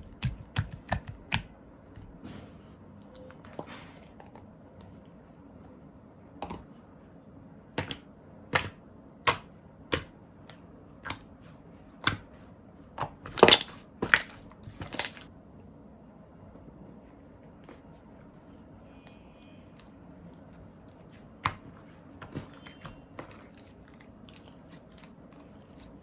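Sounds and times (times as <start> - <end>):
slime popping and clicking: 13.2 - 15.2.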